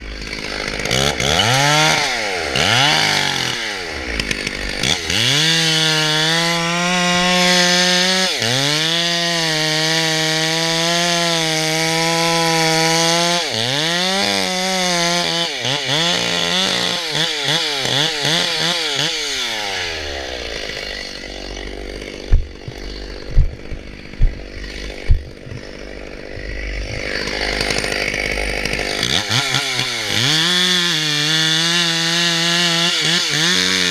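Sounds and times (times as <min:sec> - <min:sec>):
chainsaw revving: 0:00.0 - 0:33.9
sharp loud thumps: 0:22.2 - 0:25.7.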